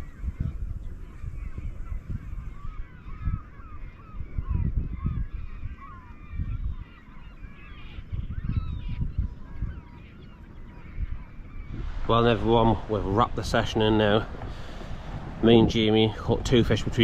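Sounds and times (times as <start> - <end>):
flock of birds calling: 0.0 - 17.0
low rumble: 11.4 - 17.0.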